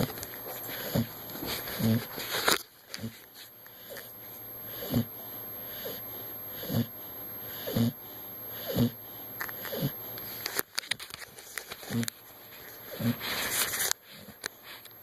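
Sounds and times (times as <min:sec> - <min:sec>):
dog snoring: 0:00.0 - 0:02.3, 0:02.9 - 0:10.0, 0:12.8 - 0:13.4.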